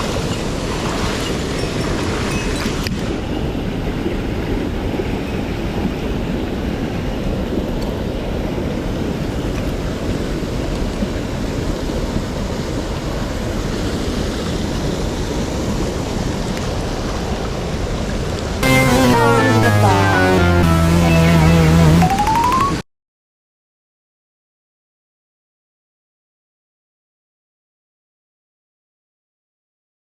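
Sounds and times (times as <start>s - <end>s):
stream water rushing: 0.0s - 18.6s
music: 18.6s - 22.8s.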